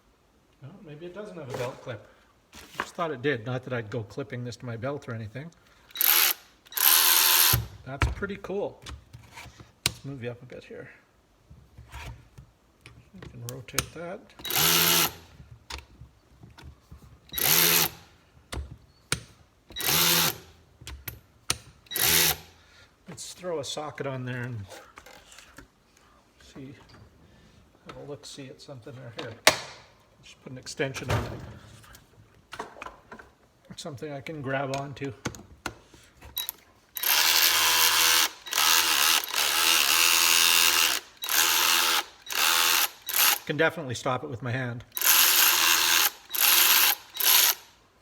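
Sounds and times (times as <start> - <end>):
cordless ratchet motor whirring: 5.9 - 7.7, 14.4 - 15.3, 17.3 - 18.1, 19.7 - 20.5, 21.9 - 22.5, 36.4 - 43.5, 44.9 - 47.7.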